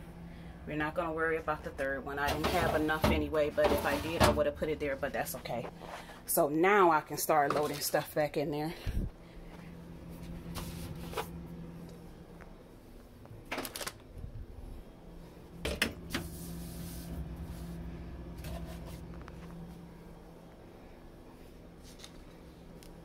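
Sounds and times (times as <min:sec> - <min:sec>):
refrigerator hum: 0:00.0 - 0:23.0
food containers rustling and knocking: 0:02.2 - 0:05.8.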